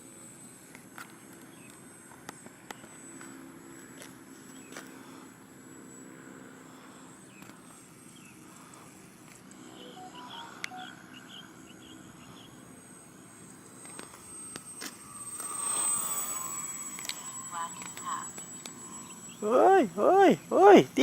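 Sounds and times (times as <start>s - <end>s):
steady low hum: 0.0s - 21.0s
thin high whine: 0.0s - 21.0s
small bird chirping: 9.7s - 12.6s, 17.5s - 19.6s.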